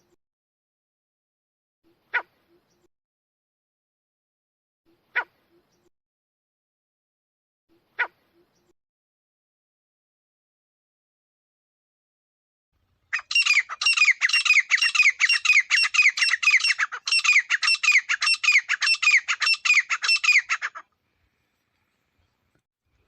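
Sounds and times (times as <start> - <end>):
francolin calling harshly: 13.1 - 20.9.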